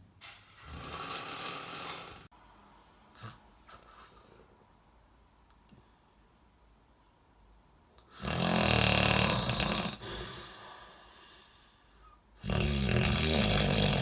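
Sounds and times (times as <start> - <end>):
loud rattling snoring: 0.6 - 2.3, 8.2 - 10.2, 12.4 - 14.0.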